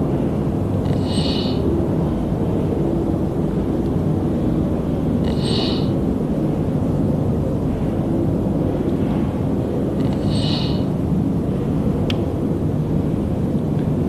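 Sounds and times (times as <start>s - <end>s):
panda snoring: 0.8s - 1.6s, 5.2s - 6.0s, 10.0s - 10.9s.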